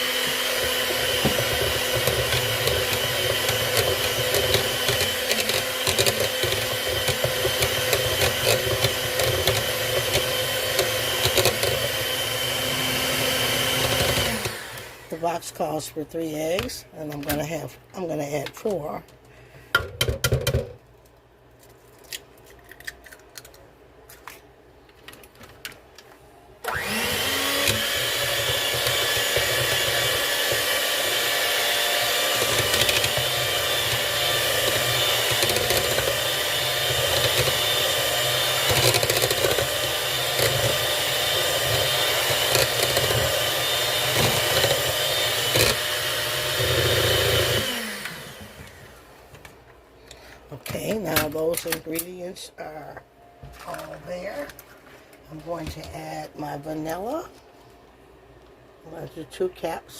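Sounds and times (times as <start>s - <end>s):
electric mixer running: 0.0s - 15.8s, 26.6s - 49.2s.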